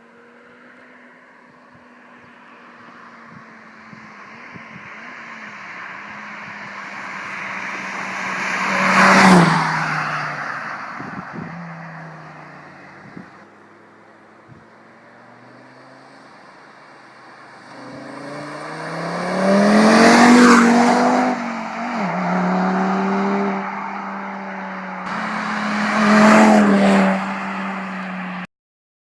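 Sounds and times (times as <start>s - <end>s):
car engine accelerating hard: 17.4s - 23.6s, 25.0s - 28.4s.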